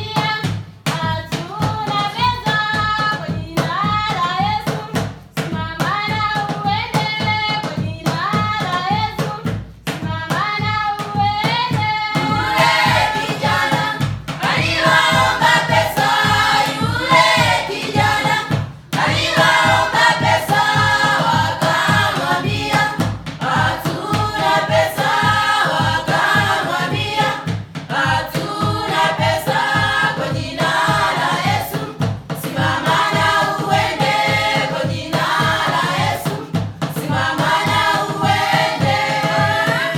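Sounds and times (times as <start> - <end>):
steady beat: 11.3 - 39.9
choir singing: 12.2 - 39.9.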